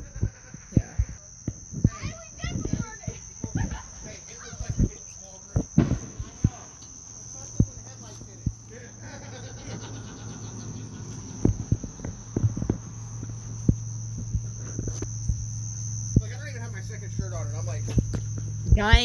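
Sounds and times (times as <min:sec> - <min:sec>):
insects chirring: 0:00.0 - 0:19.0
short low thumps: 0:18.0 - 0:19.0.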